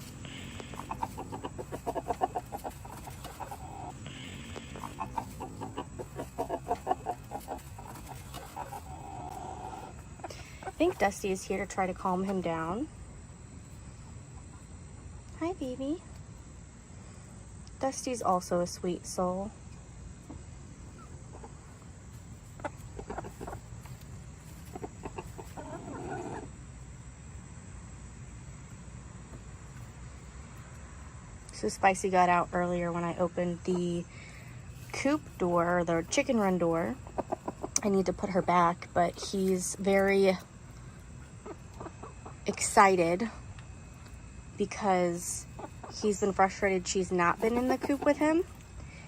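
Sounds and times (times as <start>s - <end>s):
rooster clucking: 0.0s - 11.2s, 22.4s - 26.6s, 35.9s - 38.5s, 41.3s - 42.6s, 47.2s - 48.5s
chickens clucking: 0.0s - 12.9s, 13.6s - 15.3s, 20.1s - 27.2s, 28.5s - 48.9s.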